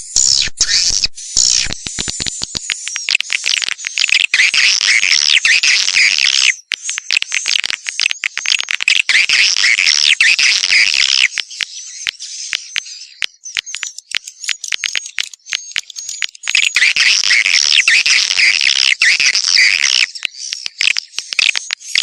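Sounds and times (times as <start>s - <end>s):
high-pitched bird chirping: 0.0s - 1.8s, 2.4s - 6.7s, 9.0s - 22.0s
sharp clicks: 1.4s - 22.0s.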